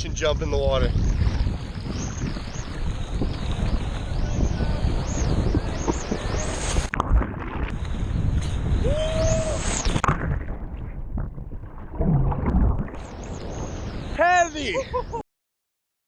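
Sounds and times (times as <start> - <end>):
wind buffeting microphone: 0.0 - 15.2
water splashing: 0.9 - 14.7.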